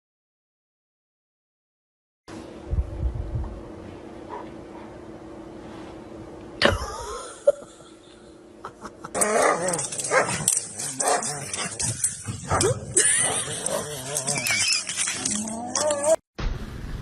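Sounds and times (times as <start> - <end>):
dog barking: 9.4 - 11.3.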